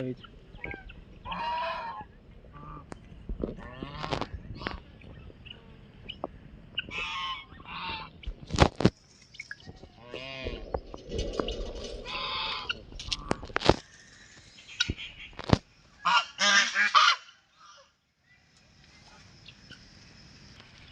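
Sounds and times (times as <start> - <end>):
duck quacking: 16.0 - 17.3.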